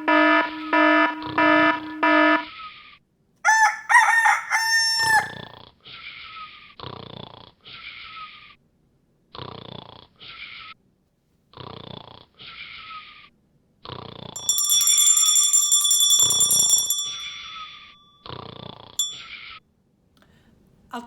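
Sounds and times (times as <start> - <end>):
bell alarm clock ringing: 0.0 - 2.5, 14.4 - 18.2, 19.0 - 19.4
snoring: 5.5 - 8.6, 9.3 - 10.6, 11.5 - 13.1, 13.8 - 14.4, 18.2 - 19.0.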